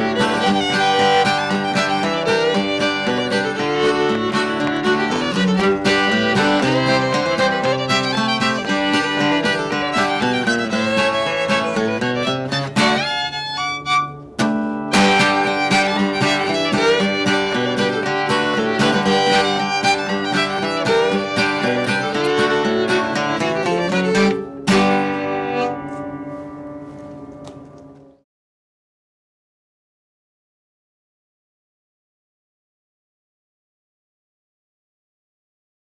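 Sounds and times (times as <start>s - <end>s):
fiddle: 0.0s - 28.0s
acoustic guitar: 0.0s - 28.1s.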